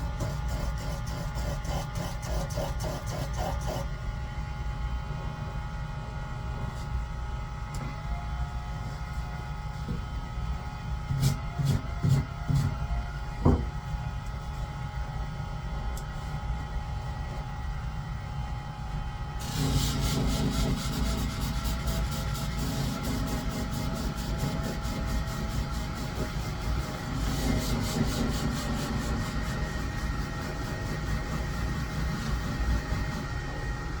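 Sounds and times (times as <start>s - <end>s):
knocks: 13.4s - 13.7s.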